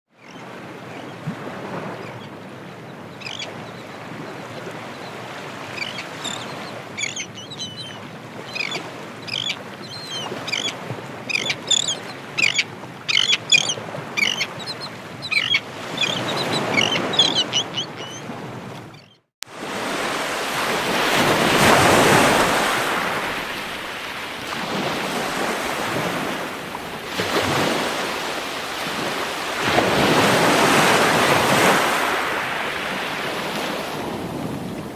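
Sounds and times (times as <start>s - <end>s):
ocean waves breaking on shore: 0.2s - 34.9s
birds chirping: 3.1s - 19.2s.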